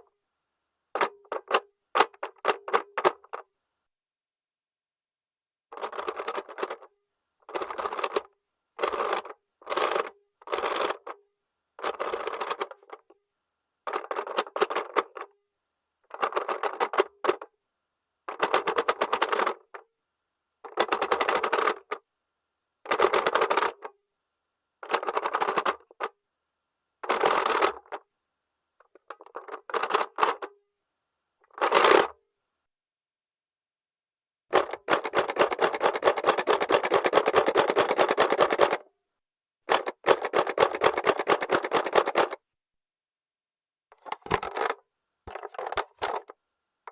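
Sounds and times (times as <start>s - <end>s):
plastic toy mechanism ratcheting: 5.7s - 6.9s, 7.5s - 11.2s, 11.8s - 13.1s, 13.9s - 15.3s, 16.1s - 17.5s, 18.3s - 19.8s, 20.7s - 22.0s, 22.9s - 23.9s, 24.8s - 26.1s, 27.0s - 28.0s, 28.8s - 30.5s, 31.4s - 32.2s, 34.5s - 38.8s, 39.7s - 42.4s, 44.0s - 46.9s.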